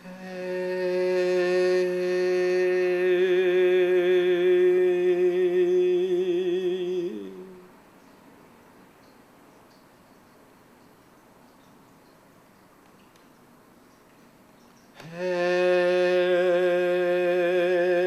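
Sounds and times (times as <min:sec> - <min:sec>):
person chanting a long held note: 0:00.0 - 0:07.7, 0:15.0 - 0:18.0.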